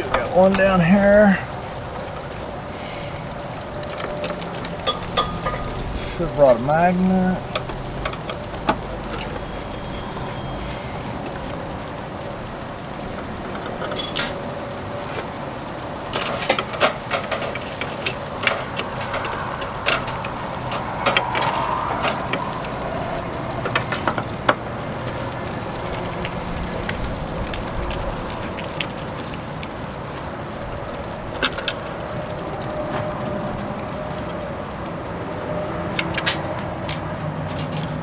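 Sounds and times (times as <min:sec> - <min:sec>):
steady background noise: 0:00.0 - 0:38.0.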